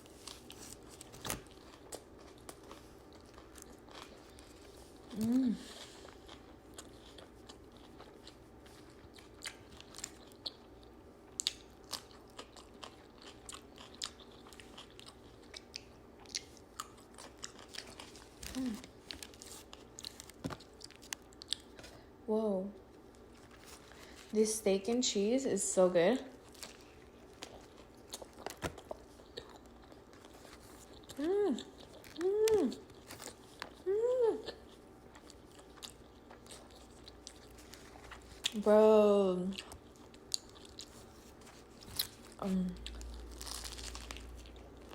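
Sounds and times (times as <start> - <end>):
chewing and crunching: 0.0 - 22.1, 22.8 - 24.4, 26.2 - 38.8, 39.4 - 44.9
person humming mmm: 5.1 - 5.8, 18.5 - 19.0, 31.2 - 32.9, 33.8 - 34.6, 42.4 - 43.0.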